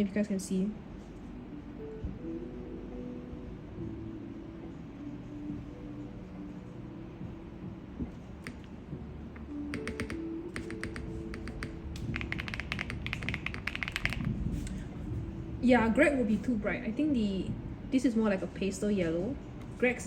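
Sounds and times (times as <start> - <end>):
mechanical keyboard typing: 9.7 - 14.4.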